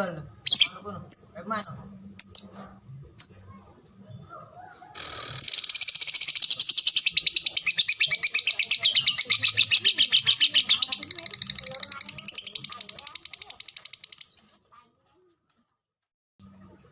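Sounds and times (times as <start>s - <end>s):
bird chirp: 0.4s - 14.6s
bird chattering trill: 5.0s - 14.4s.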